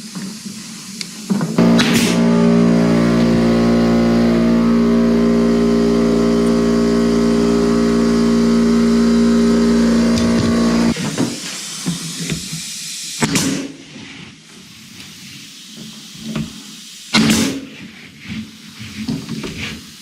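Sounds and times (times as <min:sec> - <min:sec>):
motor running: 0:01.6 - 0:11.0.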